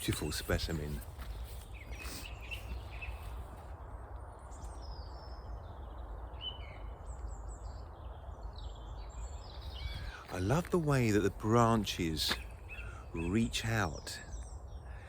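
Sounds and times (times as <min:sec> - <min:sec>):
songbirds chirping: 0:00.0 - 0:15.0.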